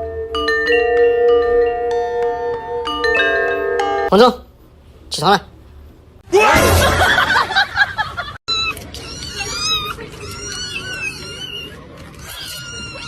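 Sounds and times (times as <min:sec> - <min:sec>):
cat mewing: 0:08.5 - 0:13.0
cat yowling: 0:08.5 - 0:13.0.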